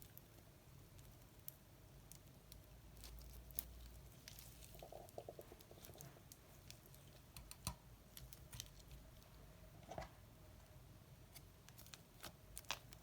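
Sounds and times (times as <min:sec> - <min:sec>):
slime being stirred: 0:00.0 - 0:10.0.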